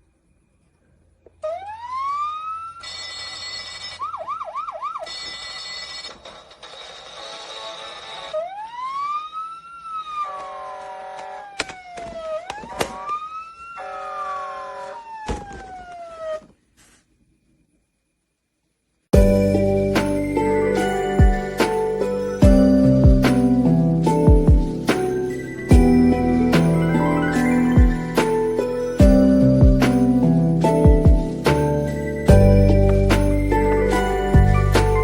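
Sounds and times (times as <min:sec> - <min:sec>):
siren yelps: 0:01.4 - 0:05.4, 0:08.3 - 0:16.6
toy siren wailing: 0:01.4 - 0:06.2, 0:08.3 - 0:16.5.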